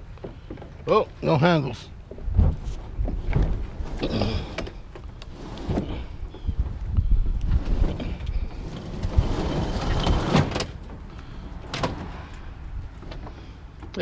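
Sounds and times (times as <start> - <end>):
metal grill scraping and rattling: 7.6 - 10.8.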